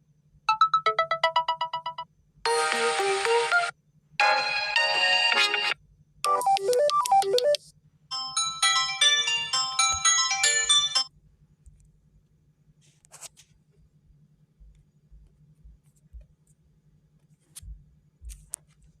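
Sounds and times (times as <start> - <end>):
phone ringtone melody: 0.5 - 5.6, 6.3 - 11.1
low steady hum: 7.6 - 19.0.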